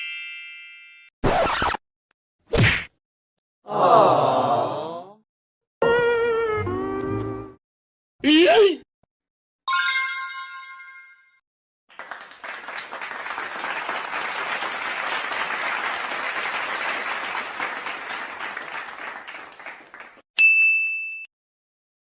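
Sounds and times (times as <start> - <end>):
crowd applauding: 11.9 - 20.2
sharp high ding: 20.4 - 21.3.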